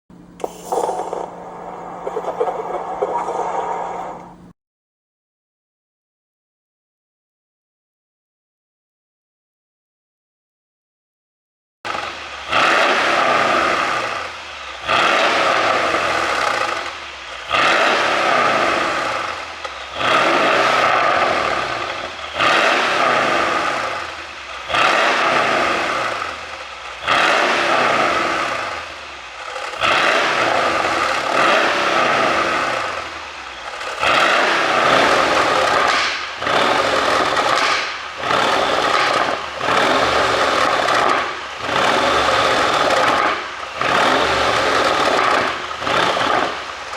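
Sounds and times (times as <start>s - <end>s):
car engine revving: 0.2s - 4.5s, 11.9s - 46.9s
exhaust pops and crackles: 29.4s - 46.9s.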